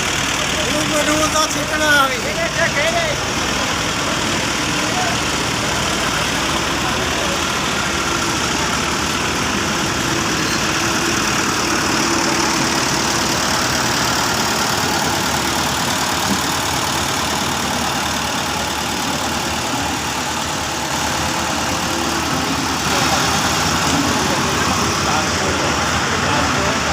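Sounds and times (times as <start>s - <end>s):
diesel engine running: 0.0s - 26.9s.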